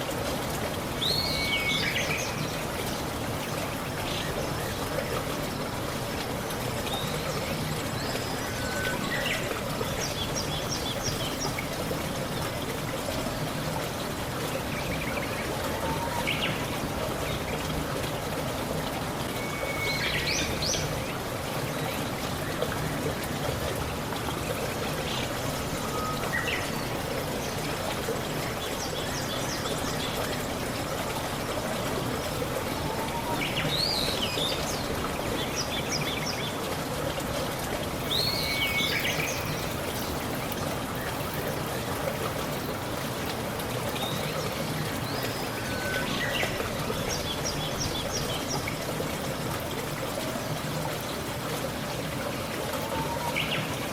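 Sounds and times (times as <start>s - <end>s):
water trickling: 0.0s - 53.9s
birds chirping: 0.8s - 5.4s, 6.9s - 12.6s, 38.0s - 51.5s.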